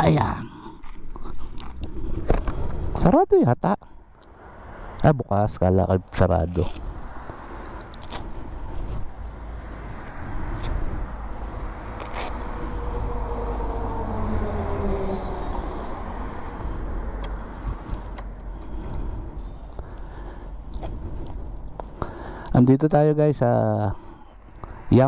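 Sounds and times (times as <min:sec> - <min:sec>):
road noise: 0:00.0 - 0:25.0
vehicle engine rumble: 0:00.0 - 0:25.0.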